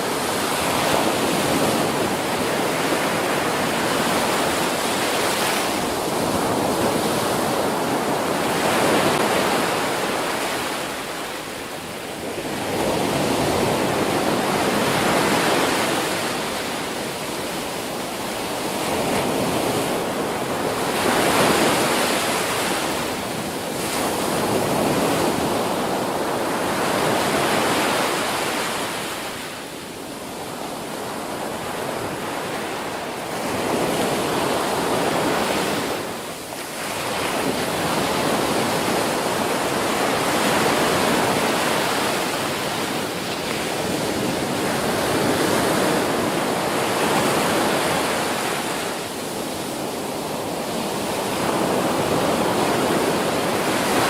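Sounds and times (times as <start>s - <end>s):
waves breaking on a beach: 0.0s - 54.0s.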